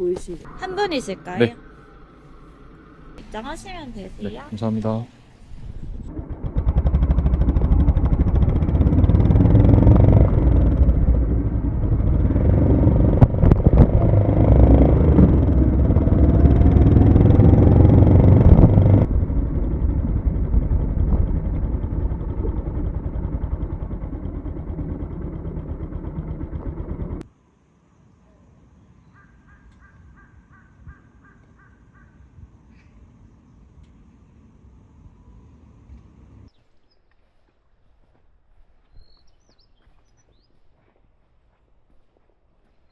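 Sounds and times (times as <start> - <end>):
motorcycle engine riding off: 0.5 - 27.3.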